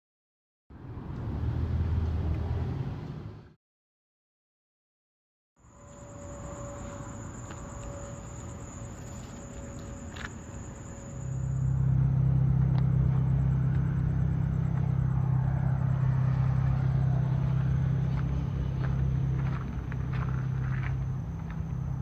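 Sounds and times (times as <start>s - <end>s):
faint high whine: 5.6s - 22.0s
low motor hum: 5.7s - 22.0s.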